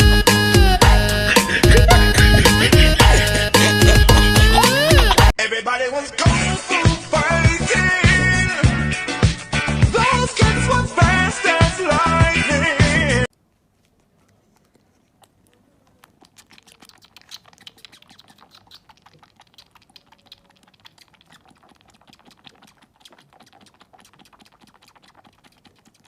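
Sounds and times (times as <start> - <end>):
music: 0.0 - 5.3, 6.2 - 13.3.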